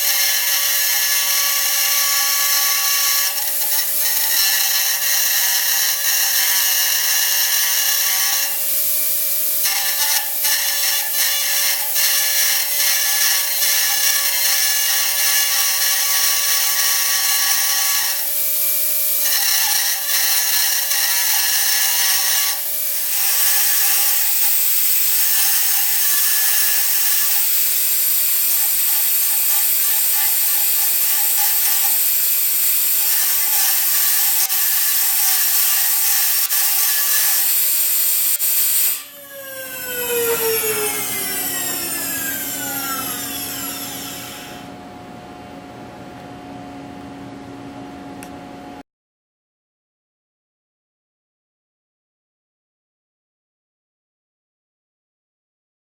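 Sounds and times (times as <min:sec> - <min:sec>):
machining spindle cutting metal: 0:00.0 - 0:44.7.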